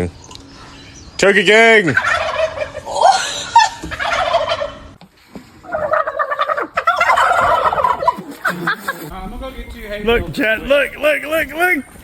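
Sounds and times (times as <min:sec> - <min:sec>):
turkeys gobbling: 0:01.8 - 0:05.0, 0:05.6 - 0:09.1.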